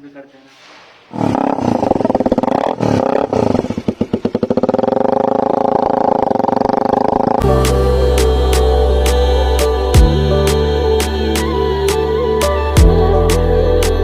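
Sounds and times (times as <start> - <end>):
motorcycle engine revving: 1.1 - 10.3.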